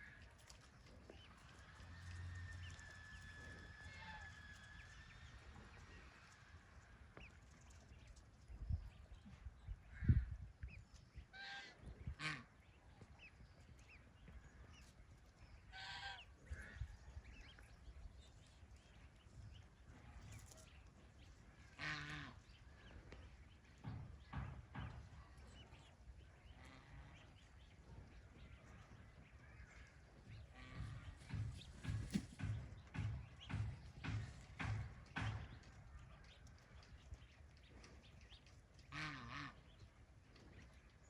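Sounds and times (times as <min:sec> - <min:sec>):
ducks quacking: 0:11.3 - 0:12.8, 0:15.6 - 0:16.9, 0:21.5 - 0:23.0, 0:28.2 - 0:35.6, 0:38.8 - 0:40.0
low bumps and thumps: 0:22.4 - 0:38.0.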